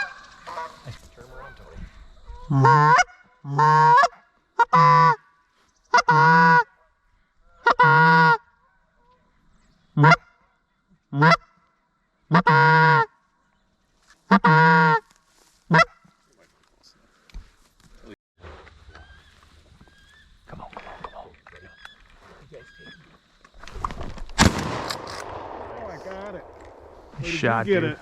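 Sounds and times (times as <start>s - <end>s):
goose honking: 0.0s - 1.6s, 2.4s - 5.2s, 5.9s - 6.7s, 7.6s - 8.5s, 10.0s - 10.3s, 11.2s - 11.5s, 12.3s - 13.1s, 14.3s - 15.0s, 15.7s - 16.0s.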